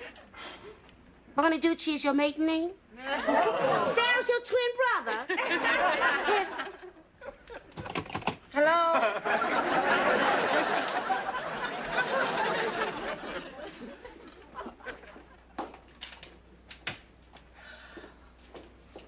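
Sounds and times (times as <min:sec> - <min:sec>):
studio audience laughing: 0:03.0 - 0:04.0, 0:05.1 - 0:07.8, 0:08.9 - 0:15.6.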